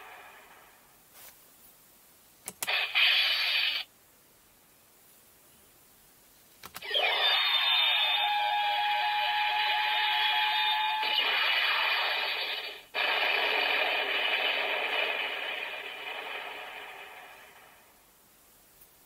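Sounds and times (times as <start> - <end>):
rush of noise: 6.8 - 18.1.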